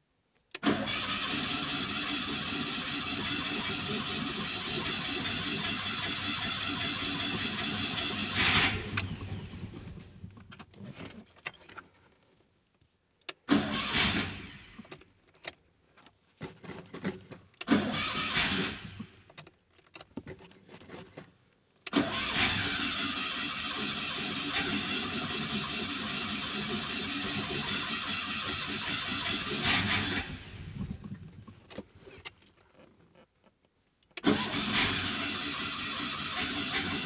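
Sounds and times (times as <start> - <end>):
car engine cranking on starter: 0.5 - 10.6, 13.3 - 15.0, 17.0 - 19.3, 21.8 - 31.6, 34.2 - 37.0.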